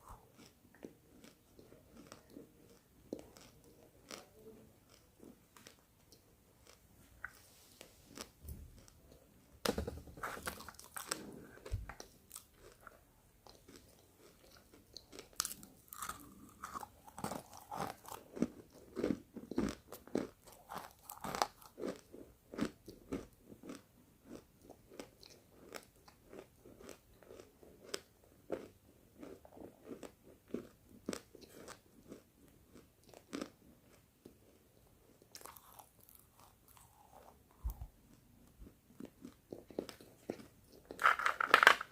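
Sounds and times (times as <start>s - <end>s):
dry chewing crunches: 0.0s - 4.3s, 4.9s - 7.4s, 10.4s - 34.0s, 35.3s - 38.2s.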